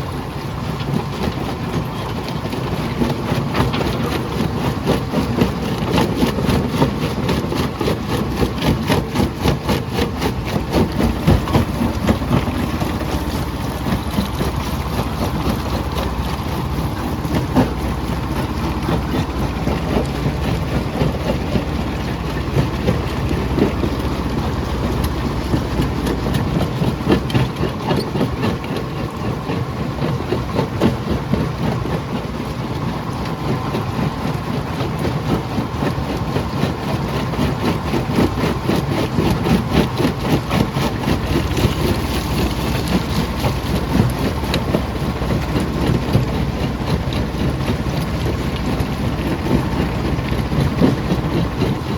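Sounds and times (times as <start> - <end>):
heavy engine drone: 0.0 - 51.9.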